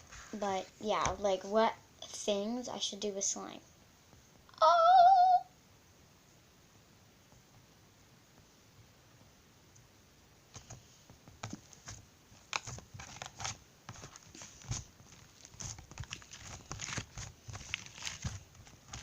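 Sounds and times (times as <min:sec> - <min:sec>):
slime crackling and popping: 0:12.4 - 0:19.0.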